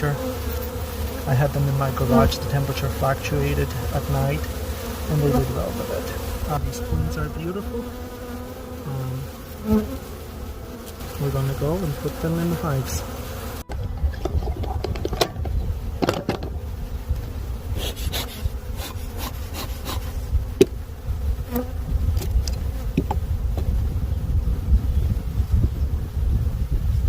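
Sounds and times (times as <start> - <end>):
honeybees buzzing: 0.0 - 27.0
hive equipment clicks and knocks: 13.7 - 16.6.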